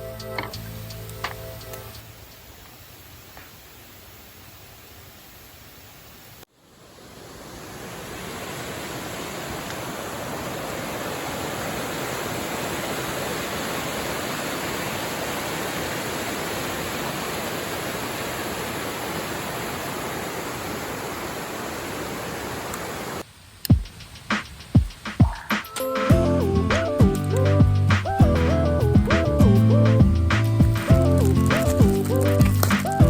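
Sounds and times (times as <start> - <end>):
flowing water rushing: 6.6 - 23.2.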